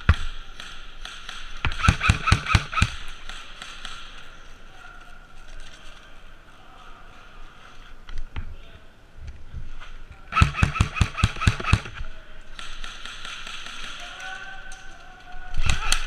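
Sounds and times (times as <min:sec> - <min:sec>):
airsoft gun shots: 0:00.0 - 0:04.2, 0:10.3 - 0:12.0, 0:12.6 - 0:14.2.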